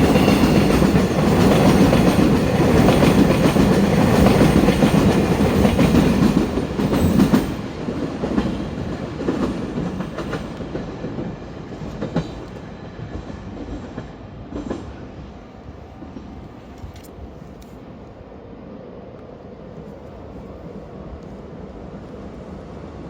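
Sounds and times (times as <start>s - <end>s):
train wheels clattering over rail joints: 0.0s - 15.0s.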